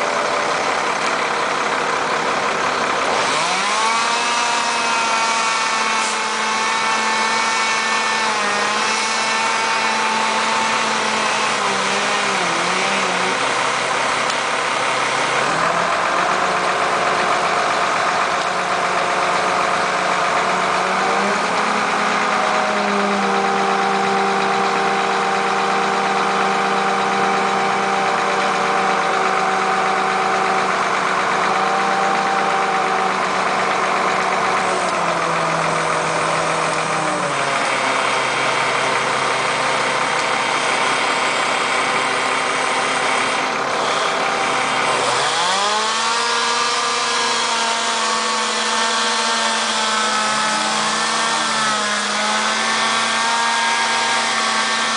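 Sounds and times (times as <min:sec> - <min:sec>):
engine running: 0:00.0 - 0:54.9.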